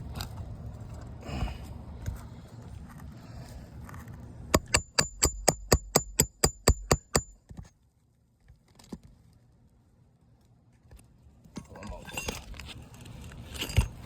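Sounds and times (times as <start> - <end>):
hammer striking nail: 4.6 - 7.4.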